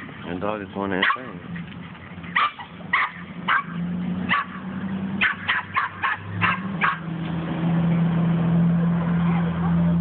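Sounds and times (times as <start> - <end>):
dog barking frantically: 1.0 - 1.4, 2.3 - 7.1.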